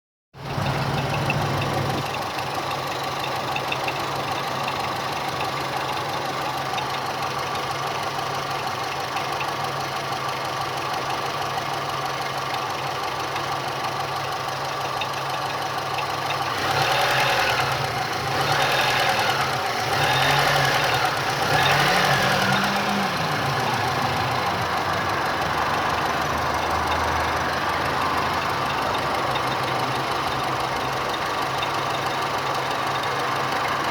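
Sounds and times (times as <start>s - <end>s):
car engine idling: 0.4s - 33.9s
engine knocking: 0.4s - 33.9s
engine revving: 16.3s - 33.9s.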